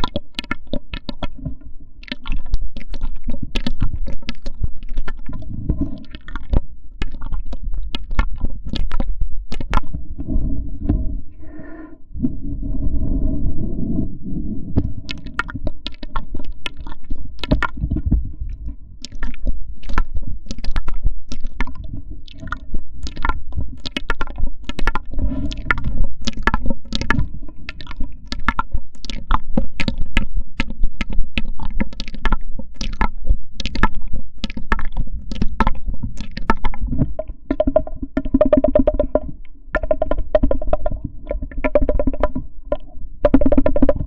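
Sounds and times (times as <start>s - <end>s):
irregular clicks and crackles: 0.0s - 10.0s, 14.8s - 44.0s
steady low rumble: 9.2s - 16.4s.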